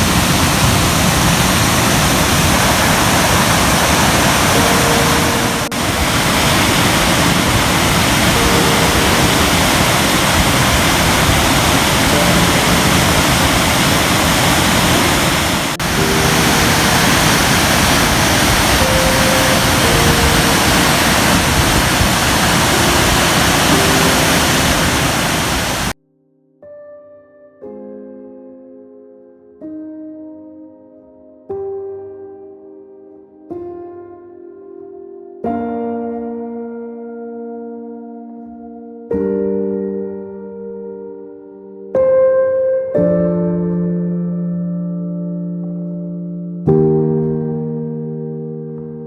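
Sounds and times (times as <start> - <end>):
faint musical notes: 0.0 - 26.0
loud steady rushing noise: 0.0 - 26.0
soft piano music: 0.0 - 49.0.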